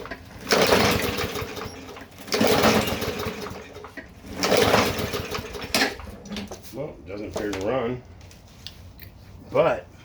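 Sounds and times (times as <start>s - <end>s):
lawn mower engine cranking: 0.0s - 6.5s.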